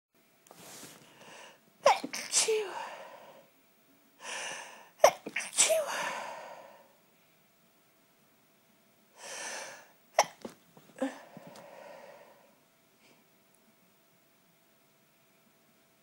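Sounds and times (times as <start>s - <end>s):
person sneezing: 1.8s - 3.2s, 5.0s - 6.8s, 10.2s - 11.4s.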